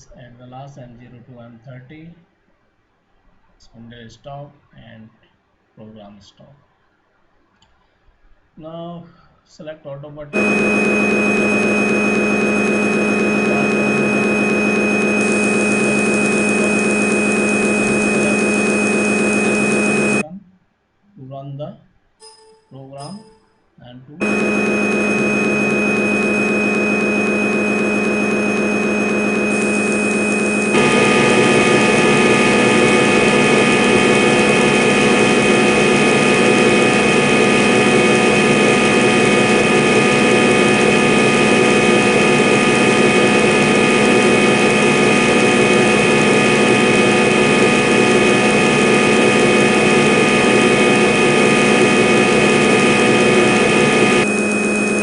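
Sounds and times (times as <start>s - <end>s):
lathe machine hum with whine: 10.4s - 20.2s, 24.2s - 55.0s.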